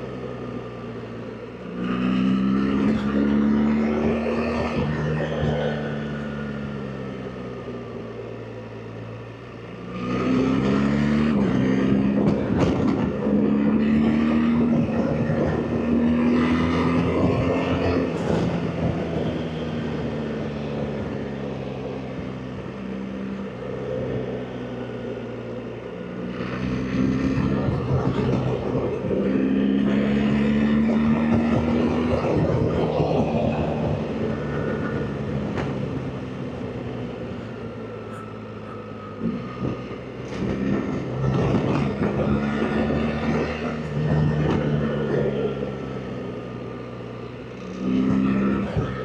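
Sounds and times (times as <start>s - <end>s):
motorcycle engine revving: 1.7s - 6.8s, 26.2s - 49.0s.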